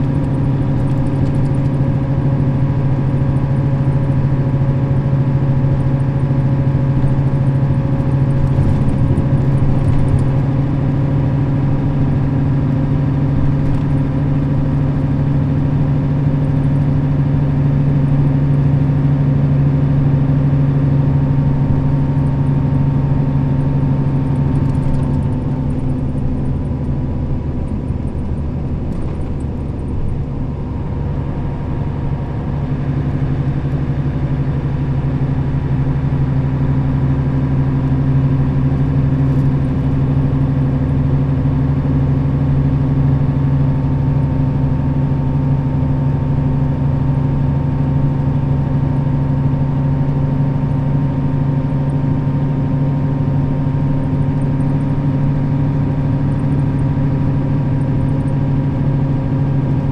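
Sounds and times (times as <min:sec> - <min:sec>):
bus diesel engine running: 0:00.0 - 0:59.9
road noise: 0:21.3 - 0:36.3.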